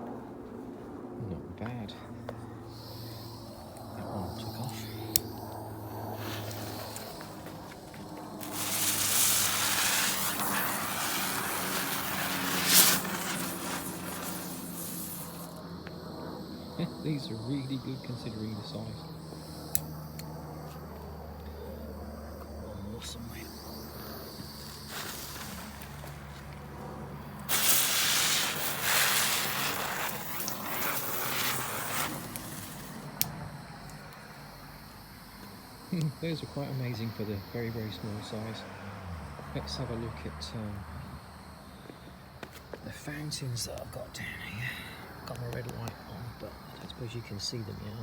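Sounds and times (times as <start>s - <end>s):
spinner firework hissing: 2.6s - 48.0s.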